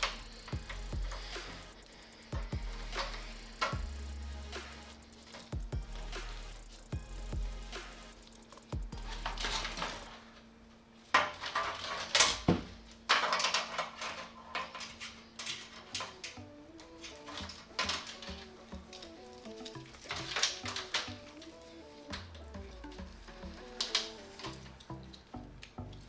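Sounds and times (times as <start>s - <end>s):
electronic music with a beat: 0.0s - 10.2s, 16.2s - 26.0s.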